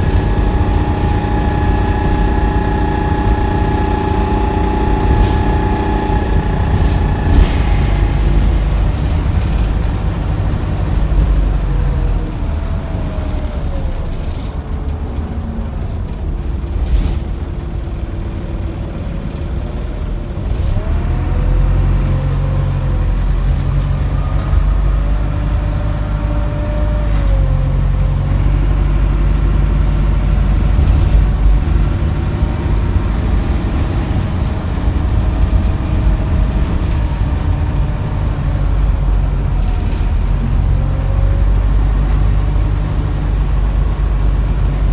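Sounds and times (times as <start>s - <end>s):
whining tones rising and falling: 0.0s - 9.5s
bus diesel engine droning: 0.0s - 44.9s.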